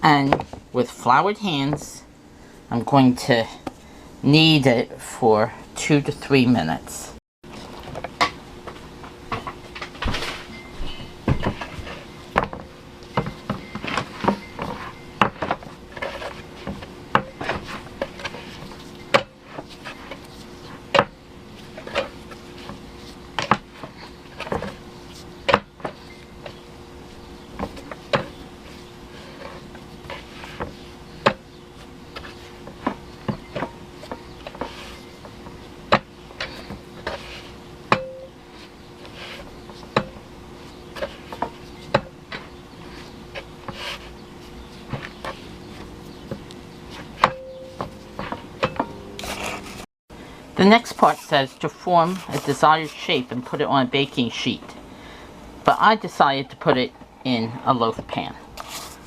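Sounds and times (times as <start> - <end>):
dough kneading thumps: 11.1 - 48.9.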